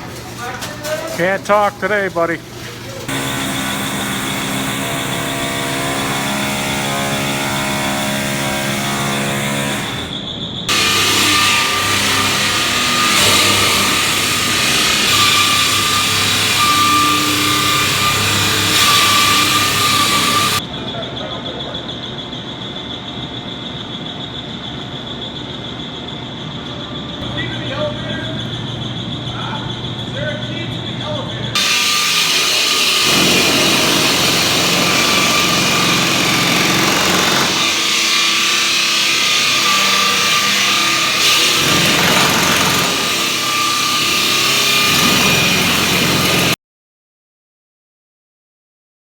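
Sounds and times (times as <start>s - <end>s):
harsh loud machine noise whistling: 1.1s - 2.4s, 3.1s - 46.6s
mechanical drone with high whine: 12.4s - 31.6s.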